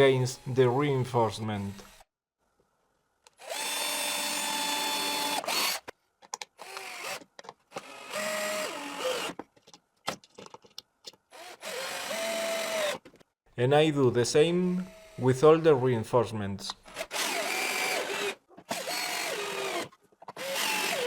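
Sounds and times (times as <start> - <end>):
cordless drill motor whine: 1.6 - 2.0, 3.4 - 5.8, 6.6 - 7.2, 7.8 - 9.3, 11.4 - 13.0, 14.9 - 15.2, 16.9 - 21.0
drill clicks: 1.6 - 2.0, 3.3 - 9.4, 11.1 - 13.1, 16.8 - 21.0.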